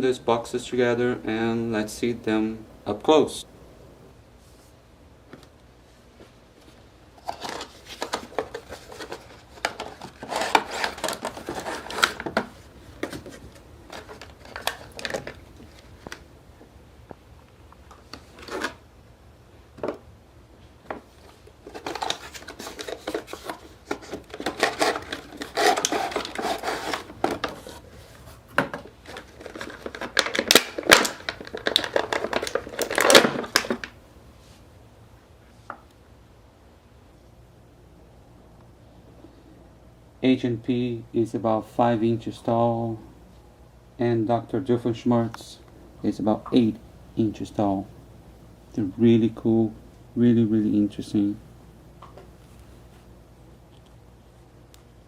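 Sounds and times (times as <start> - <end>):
packaging crinkling and tearing: 7.2 - 16.2, 21.2 - 34.0.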